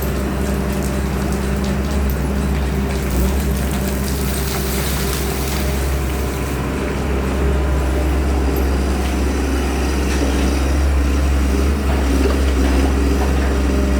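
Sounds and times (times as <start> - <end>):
excavator diesel engine drone: 0.0 - 13.9.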